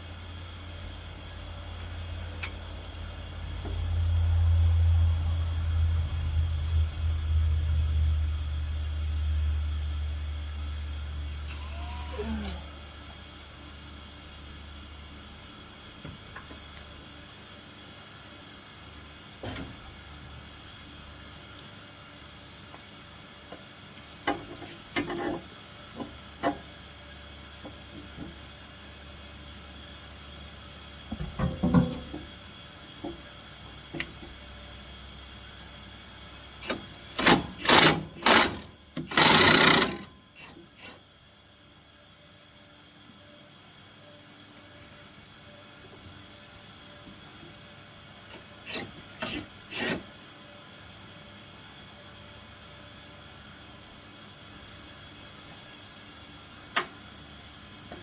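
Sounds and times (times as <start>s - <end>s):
hand tool clicks and knocks: 36.6s - 40.1s
loud rattling bursts: 36.6s - 40.1s.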